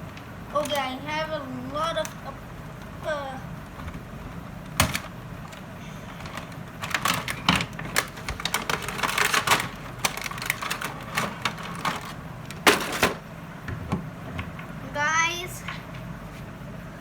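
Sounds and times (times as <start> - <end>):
toy packaging crackling and clicking: 0.1 - 0.9, 4.6 - 13.2
packaging snapping: 4.7 - 13.2.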